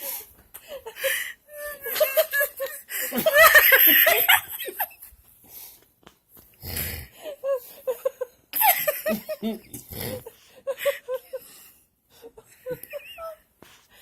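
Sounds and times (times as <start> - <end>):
person snoring loudly: 6.6 - 7.2, 9.7 - 10.3
stifled giggles: 7.2 - 13.6.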